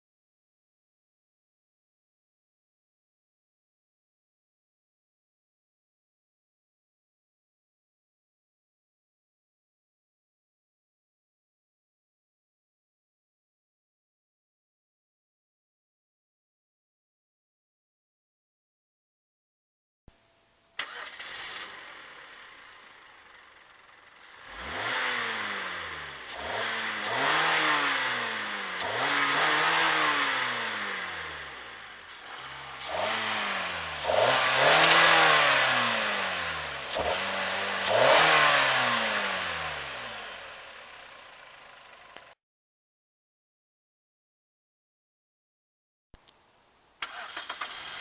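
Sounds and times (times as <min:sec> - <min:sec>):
car engine revving: 0:20.8 - 0:42.3.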